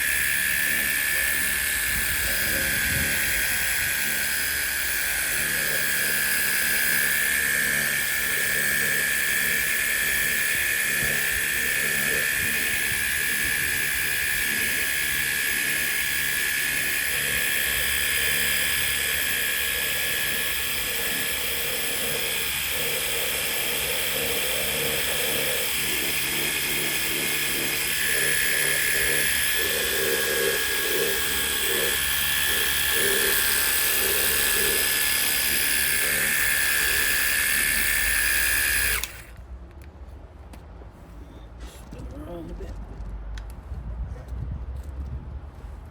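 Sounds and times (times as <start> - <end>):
jet wash spraying water: 0.0 - 39.2
pump motor whining: 0.0 - 39.5.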